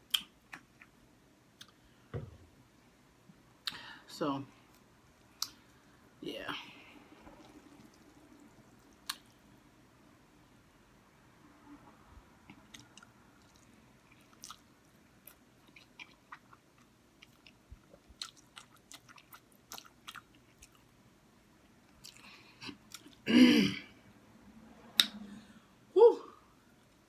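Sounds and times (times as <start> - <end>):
person chewing noodles: 7.3 - 9.5, 12.5 - 21.0, 21.6 - 23.2.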